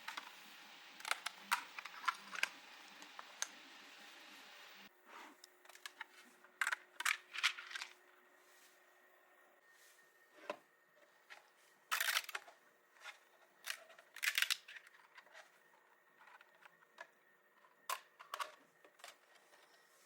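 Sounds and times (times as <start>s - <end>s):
plastic parts clicking and tapping: 1.0s - 3.6s, 5.6s - 8.0s, 11.3s - 15.6s, 16.2s - 19.8s.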